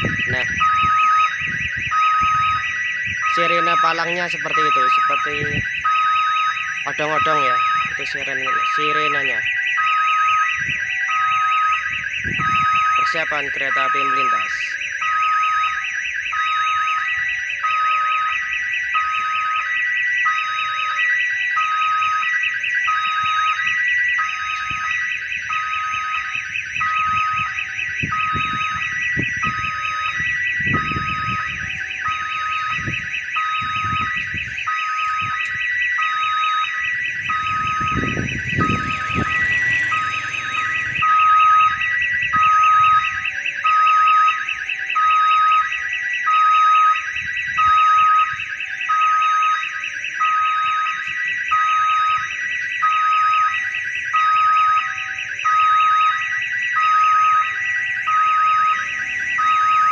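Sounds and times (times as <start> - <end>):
level crossing warning siren: 0.0 - 59.9
road traffic rumbling: 24.1 - 44.9, 54.4 - 59.9.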